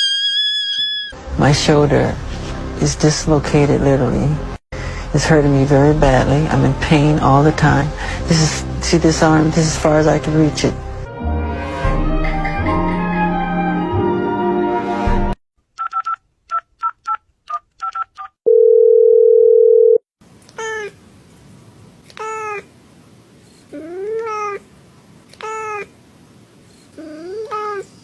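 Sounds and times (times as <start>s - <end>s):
phone keypad beeps: 15.8s - 17.2s
steady phone tone: 18.5s - 20.0s
cat meowing: 27.0s - 28.0s.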